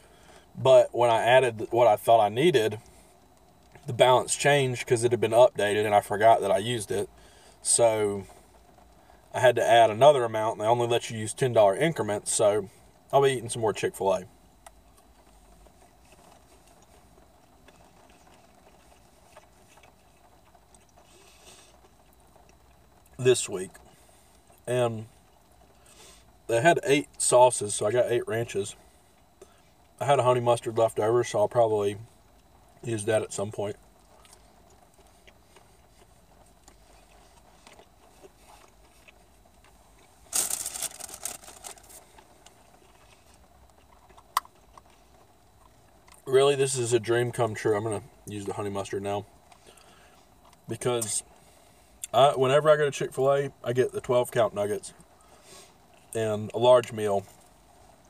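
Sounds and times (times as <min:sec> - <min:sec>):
faint chewing: 0:14.6 - 0:23.2, 0:34.0 - 0:46.3, 0:49.4 - 0:52.1
soft rustle: 0:14.8 - 0:23.0, 0:33.6 - 0:46.2.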